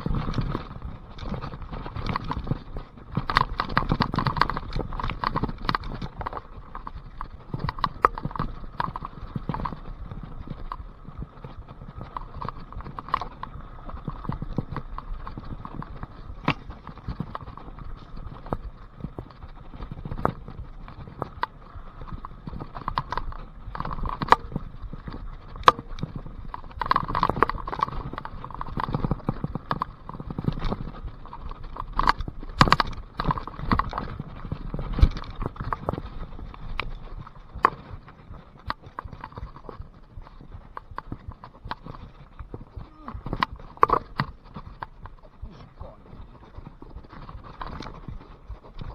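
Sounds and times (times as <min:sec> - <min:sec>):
bike rattling clicks and knocks: 0:00.0 - 0:48.9
bike tyres rolling on mud: 0:00.0 - 0:48.9.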